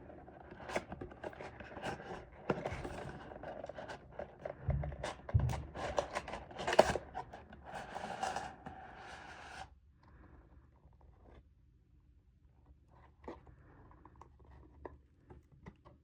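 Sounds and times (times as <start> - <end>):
dull thumps: 4.7 - 6.0.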